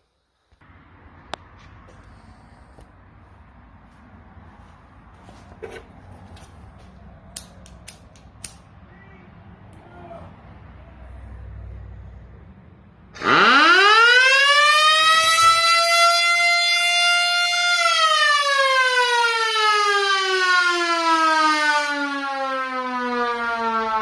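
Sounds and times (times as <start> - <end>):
air raid siren wailing: 13.0 - 24.0.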